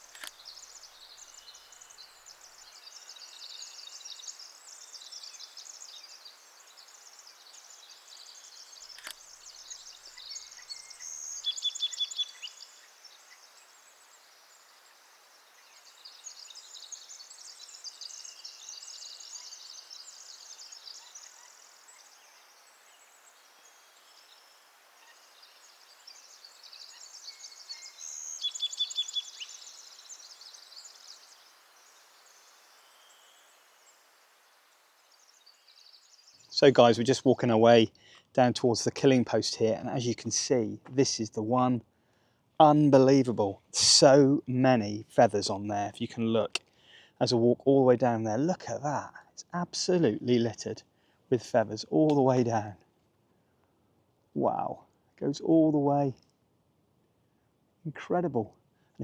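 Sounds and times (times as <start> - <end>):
sharp click: 0.0 - 0.4, 9.0 - 9.2.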